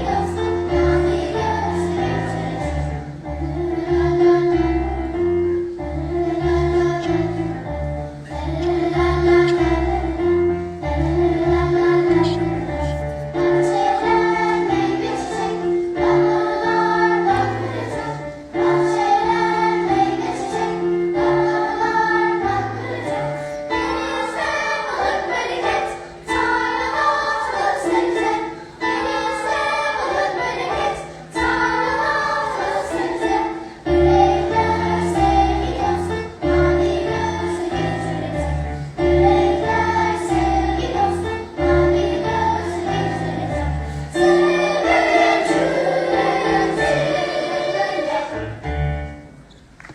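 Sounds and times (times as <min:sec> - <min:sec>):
children's choir singing: 0:00.0 - 0:49.4
instrumental accompaniment with bass: 0:34.0 - 0:43.8.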